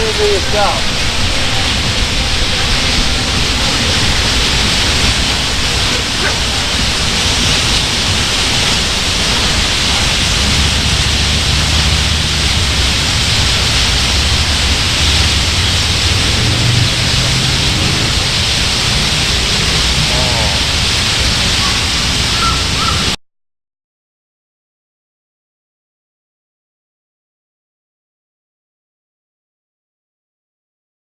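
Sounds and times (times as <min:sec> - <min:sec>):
low rumble: 0:00.0 - 0:22.4
flock of birds chattering: 0:19.4 - 0:23.2.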